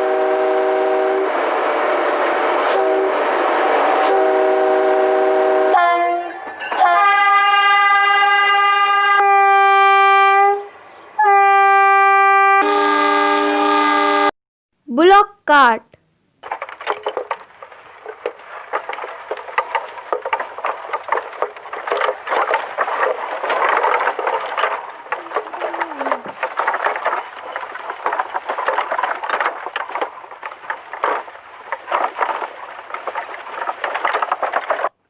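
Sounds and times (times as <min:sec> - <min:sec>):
wooden cart wheels rattling: 0:16.4 - 0:35.0.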